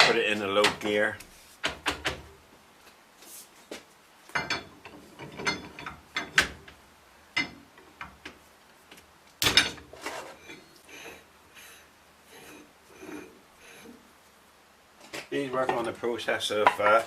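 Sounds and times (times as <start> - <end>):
metallic clanks and knocks: 4.3 - 6.8, 9.4 - 9.9.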